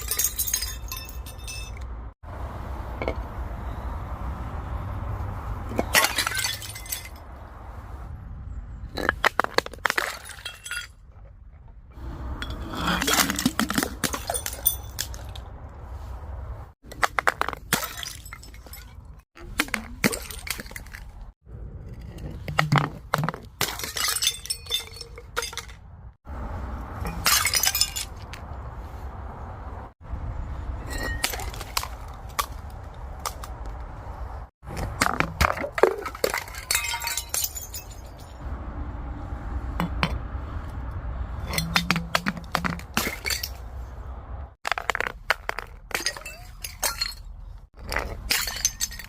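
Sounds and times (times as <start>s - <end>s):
glass bottles breaking: 0.0s - 1.8s, 5.8s - 7.2s, 9.0s - 11.0s, 12.4s - 15.4s, 17.1s - 21.0s, 22.6s - 25.8s, 27.1s - 28.2s, 30.8s - 31.9s, 34.9s - 38.4s, 41.5s - 43.6s, 44.7s - 49.0s.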